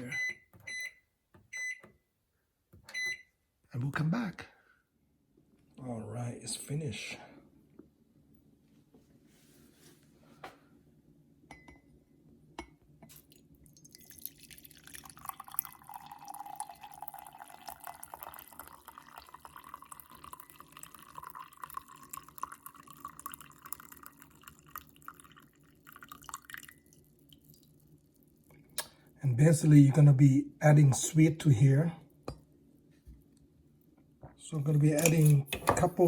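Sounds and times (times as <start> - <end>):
coffee pouring into a glass: 13.1 - 28.5.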